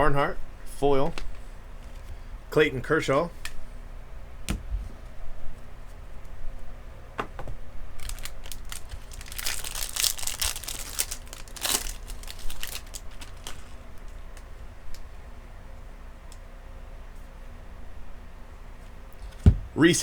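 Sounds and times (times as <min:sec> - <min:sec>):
foil wrapper crinkling and tearing: 0:08.0 - 0:15.0.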